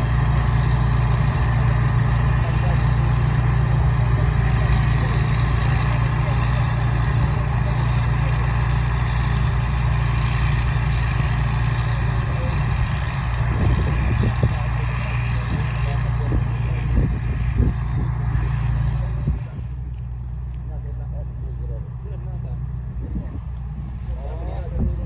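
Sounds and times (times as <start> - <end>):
harvester engine drone: 0.0 - 25.0.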